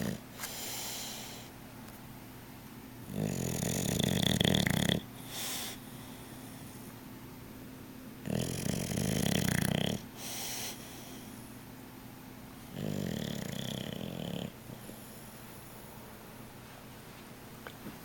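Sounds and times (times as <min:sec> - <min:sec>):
dog snoring: 0:00.0 - 0:01.5, 0:03.0 - 0:06.9, 0:08.2 - 0:11.3, 0:12.6 - 0:15.2
soft dog breath: 0:10.2 - 0:11.5.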